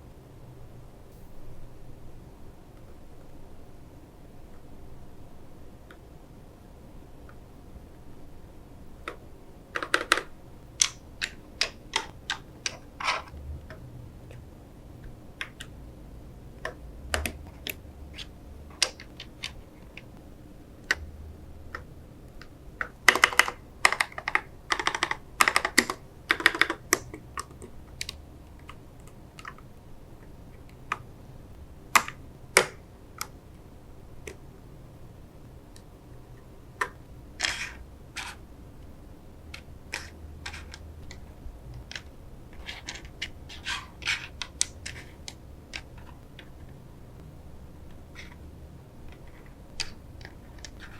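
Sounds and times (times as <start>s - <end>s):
mechanical keyboard clacking: 21.7s - 29.6s.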